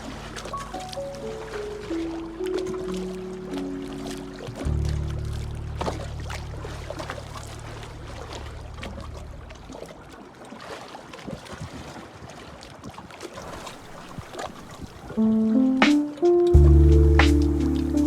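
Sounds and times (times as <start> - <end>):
small waves lapping: 0.0 - 18.0
water splashes and drips: 0.0 - 18.0
music: 0.7 - 6.3, 15.2 - 18.0.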